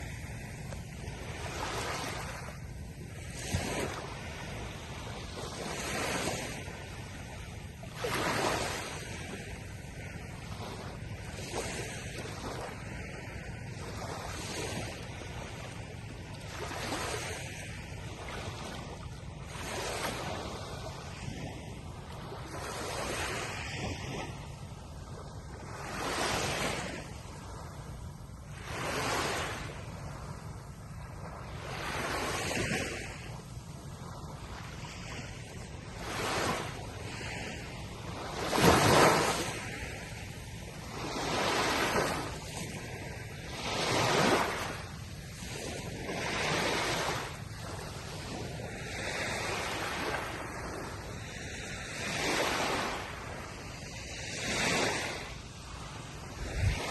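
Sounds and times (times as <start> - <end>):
ocean waves breaking on shore: 0.0 - 56.9
wind on microphone: 40.8 - 56.9.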